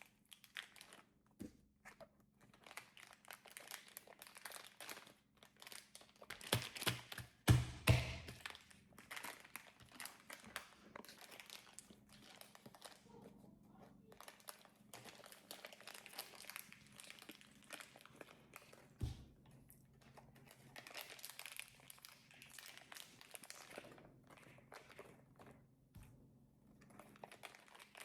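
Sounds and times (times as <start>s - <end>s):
slime crackling and popping: 2.5s - 13.0s, 14.1s - 19.3s, 20.0s - 23.8s.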